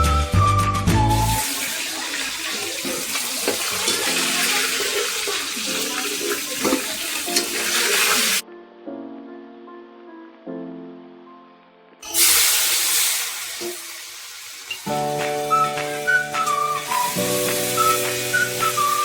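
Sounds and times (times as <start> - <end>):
background music: 0.0 - 1.6, 3.8 - 19.0
running water: 1.2 - 8.4, 12.1 - 19.0.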